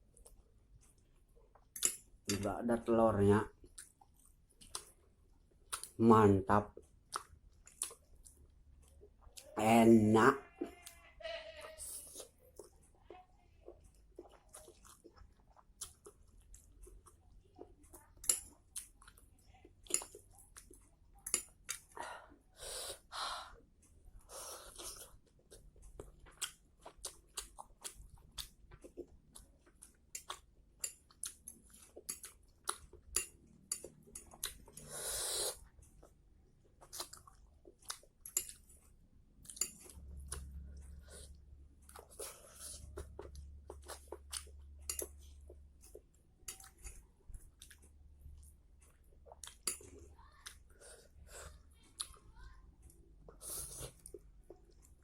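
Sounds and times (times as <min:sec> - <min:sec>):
wet chewing and lip smacks: 0:06.8 - 0:09.5, 0:12.2 - 0:22.0, 0:23.6 - 0:34.9, 0:35.6 - 0:50.7, 0:51.6 - 0:55.0
breaths: 0:22.0 - 0:23.6
slurping noodles: 0:34.8 - 0:35.6.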